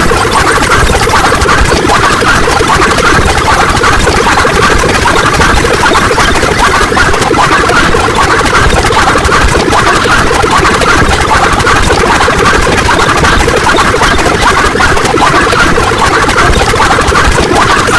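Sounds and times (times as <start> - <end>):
dense layered sound effects: 0.0 - 13.2.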